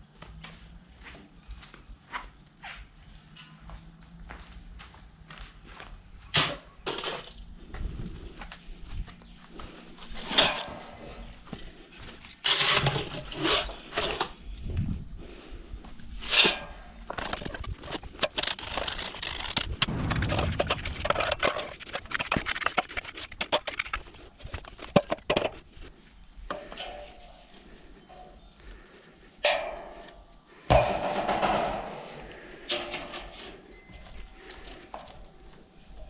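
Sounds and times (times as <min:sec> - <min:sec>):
hand tools scraping wet concrete: 0:12.4 - 0:14.3, 0:18.0 - 0:25.0.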